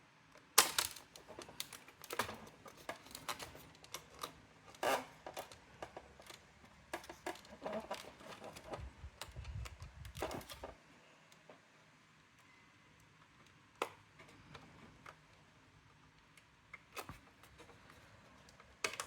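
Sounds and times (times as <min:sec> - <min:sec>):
typewriter parts clicking: 0:00.6 - 0:05.6.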